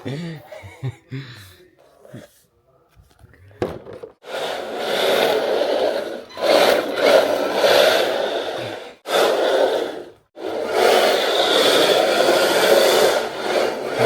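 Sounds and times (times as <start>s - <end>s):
rough scraping strokes: 4.2s - 14.0s.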